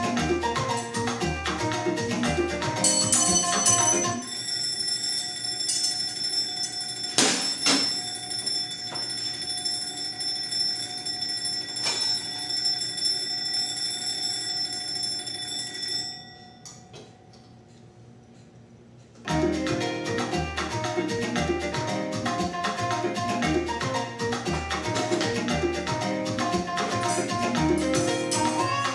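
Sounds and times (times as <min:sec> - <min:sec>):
alarm clock bell ringing: 0:02.8 - 0:16.9.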